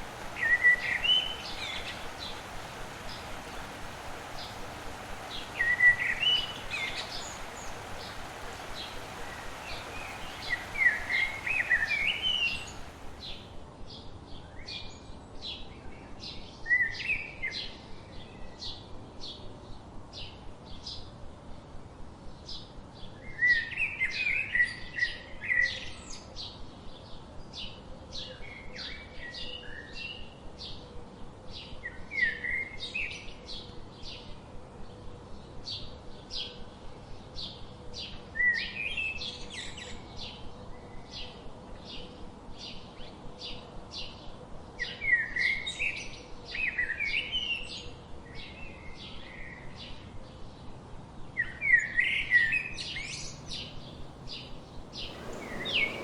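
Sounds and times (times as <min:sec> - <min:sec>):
bird warbling song: 0:00.0 - 0:13.4, 0:53.3 - 0:56.0.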